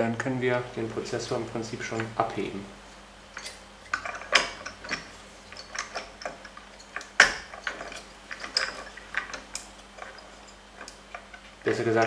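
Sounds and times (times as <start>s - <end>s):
screws clicking and scraping: 3.4s - 11.5s.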